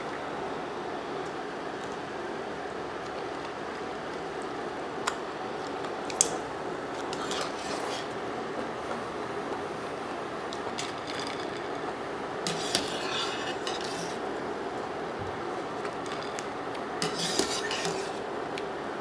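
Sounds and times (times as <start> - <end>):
steady background hiss: 0.0 - 19.0
metal kitchenware clinking on pot: 17.0 - 18.2.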